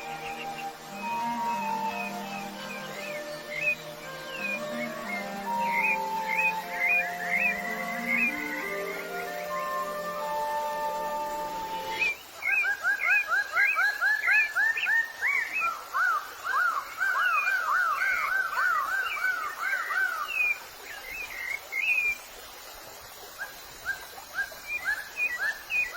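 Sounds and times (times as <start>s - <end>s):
bird repeated rising-falling calls: 0.0s - 22.2s.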